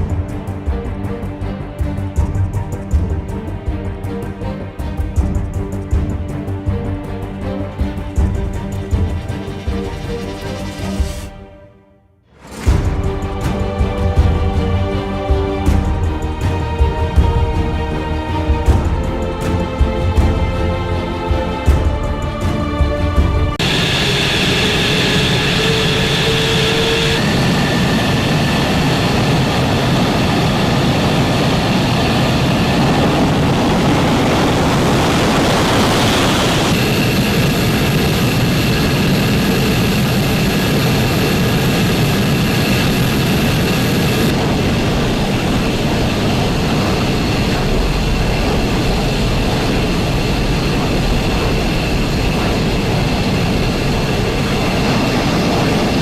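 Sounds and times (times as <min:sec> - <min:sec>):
fighter jet engines roaring: 0:12.4 - 0:56.0.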